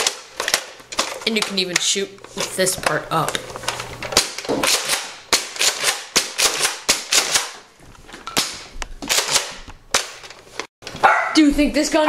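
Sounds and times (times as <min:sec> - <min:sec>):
toy blaster clacks and pops: 0:04.2 - 0:07.6.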